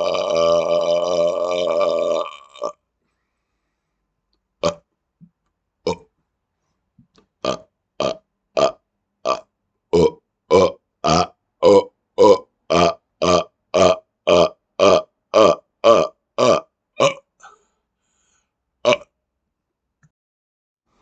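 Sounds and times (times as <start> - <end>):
man burping: 0.0 - 2.8, 4.6 - 4.9, 5.8 - 6.1, 7.4 - 17.6, 18.8 - 19.2.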